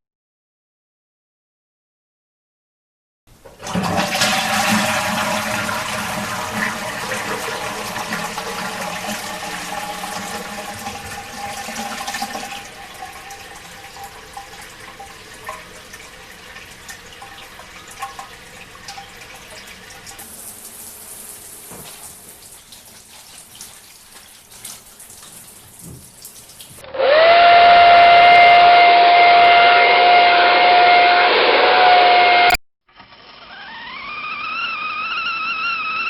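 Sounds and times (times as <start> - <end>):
running water: 3.4 - 26.8
toilet flushing: 3.4 - 28.8.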